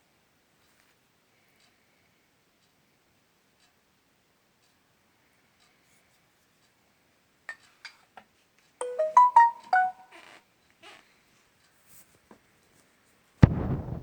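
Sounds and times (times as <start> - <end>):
chime-like melodic jingle: 8.8 - 10.1.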